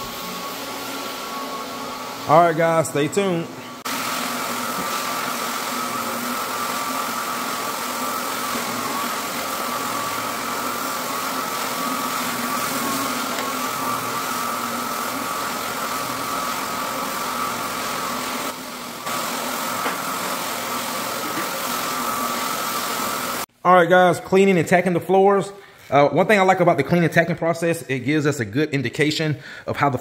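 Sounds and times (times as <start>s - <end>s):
floor machine droning: 0.0s - 23.4s.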